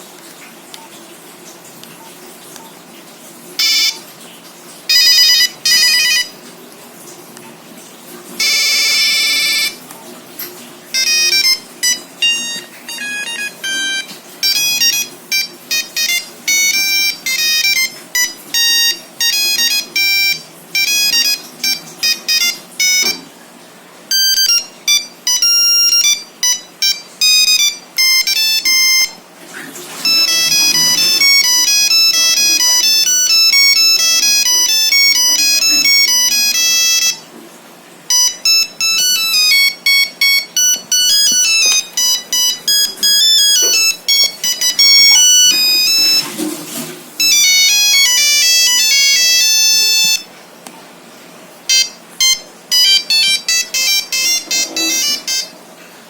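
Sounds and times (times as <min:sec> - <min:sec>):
monophonic phone ringtone beeps: 0:03.6 - 0:04.1, 0:04.9 - 0:06.4, 0:08.4 - 0:09.8, 0:10.9 - 0:23.3, 0:24.1 - 0:29.2, 0:29.8 - 0:37.2, 0:38.1 - 0:50.3, 0:51.7 - 0:55.6.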